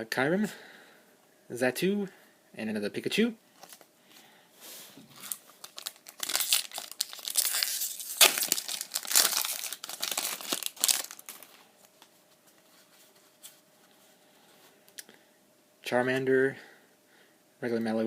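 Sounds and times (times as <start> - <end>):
foil wrapper crinkling and tearing: 5.2 - 11.6.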